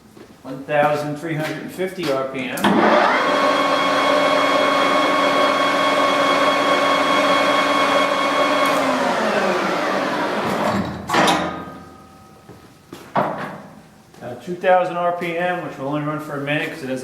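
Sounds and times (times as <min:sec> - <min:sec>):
lathe running with gear whine: 0:02.7 - 0:10.7.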